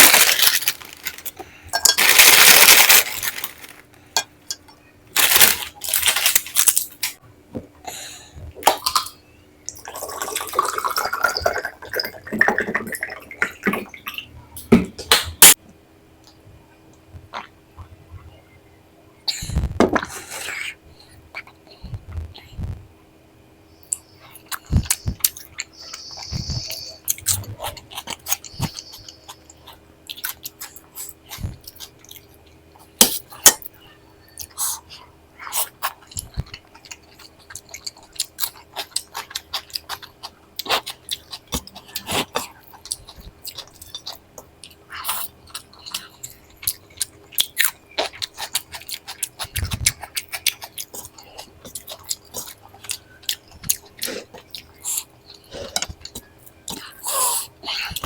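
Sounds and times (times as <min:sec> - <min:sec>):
person chewing and crunching: 0:00.0 - 0:03.9, 0:05.2 - 0:07.2, 0:23.9 - 0:33.7, 0:34.3 - 0:58.0.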